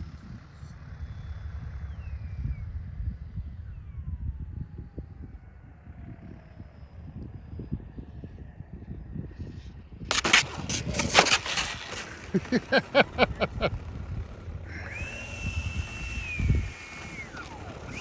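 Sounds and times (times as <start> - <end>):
high-pitched motor whine: 0.0 - 18.0
wind: 0.0 - 18.0
model jet crashing and skidding: 10.1 - 13.7.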